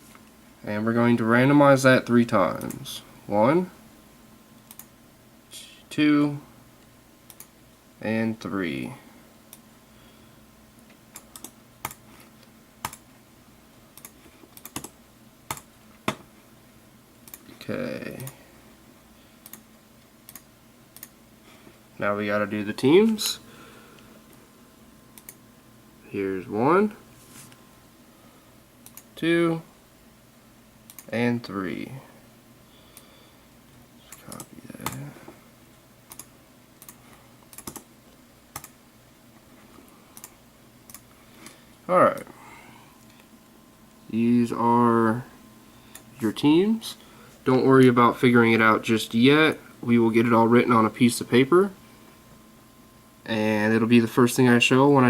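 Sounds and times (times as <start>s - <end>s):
faint low hum: 0.0s - 55.0s
keyboard and mouse clicks: 4.6s - 4.9s, 7.3s - 7.5s, 11.1s - 12.0s, 12.8s - 13.0s, 14.0s - 16.2s, 19.4s - 19.6s, 20.3s - 21.2s, 30.9s - 31.1s, 36.1s - 37.9s, 38.5s - 38.8s.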